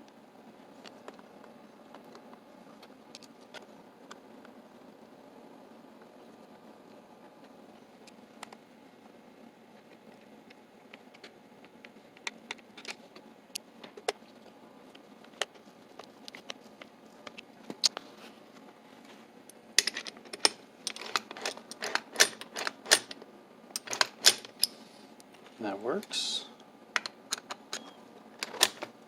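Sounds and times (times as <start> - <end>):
metal clicks of lock mechanism: 19.8 - 23.2, 23.8 - 24.7, 27.0 - 28.9.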